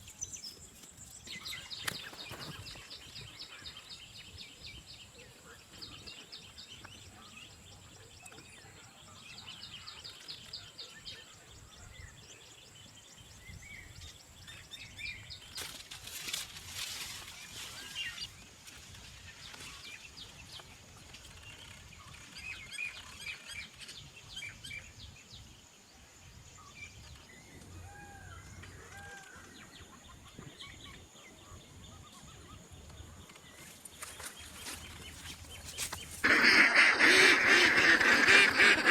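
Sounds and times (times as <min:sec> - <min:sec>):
noisy rustle: 0:15.3 - 0:24.1
birds chirping: 0:26.5 - 0:38.9
lower arched bird calls: 0:36.2 - 0:38.9.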